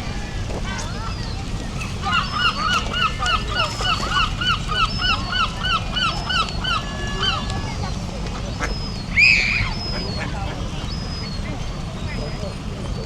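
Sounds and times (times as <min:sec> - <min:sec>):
wind rumbling on microphone: 0:00.0 - 0:13.0
geese honking: 0:01.7 - 0:11.6.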